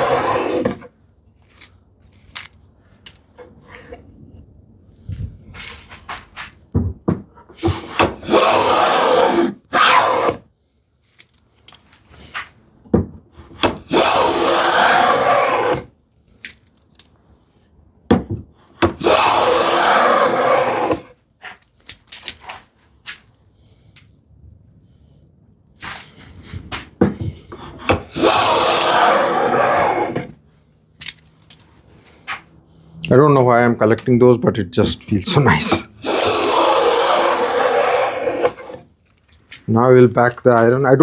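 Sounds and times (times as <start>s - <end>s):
hand plane cutting wood: 0.0s - 0.9s, 7.7s - 10.4s, 13.5s - 15.9s, 18.8s - 21.1s, 27.5s - 30.4s, 35.2s - 38.9s.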